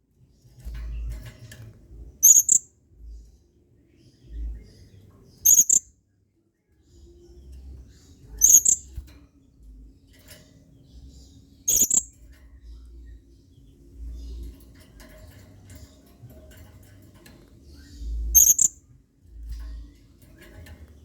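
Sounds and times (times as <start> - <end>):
parrot high shrill calls: 5.4 - 5.8, 8.4 - 8.9, 11.7 - 12.1, 18.4 - 18.7.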